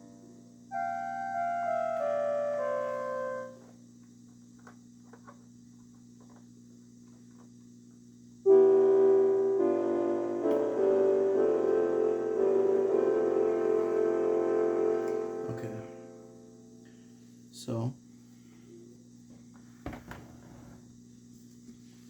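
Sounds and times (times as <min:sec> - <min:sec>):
electronic keyboard notes: 0:00.0 - 0:03.7, 0:08.5 - 0:16.7.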